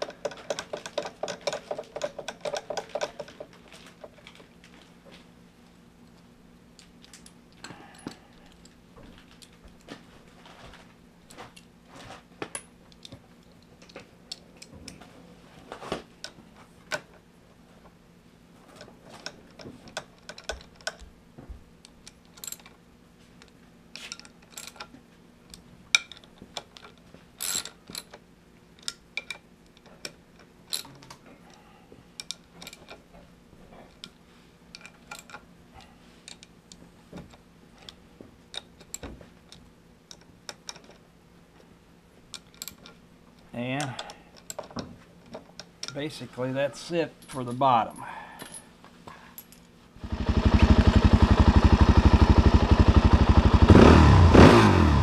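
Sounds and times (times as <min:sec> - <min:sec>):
metal tools clinking: 0:47.2 - 0:48.7.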